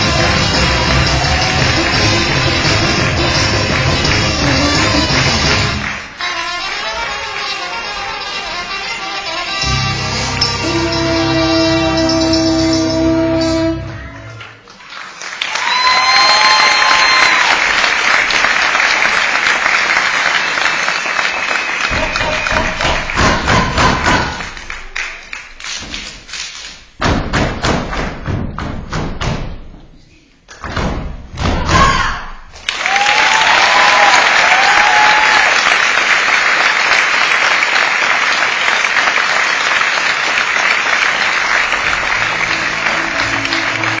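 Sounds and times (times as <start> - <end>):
audience applauding: 0.0 - 8.2, 14.2 - 26.6, 32.6 - 44.0
sharp thumps and claps: 21.9 - 29.8.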